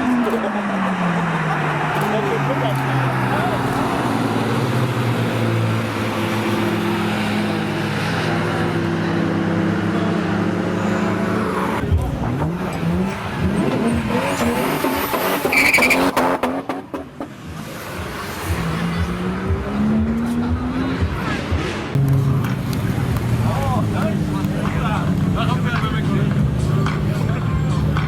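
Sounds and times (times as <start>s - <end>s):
car engine revving: 0.0s - 28.0s.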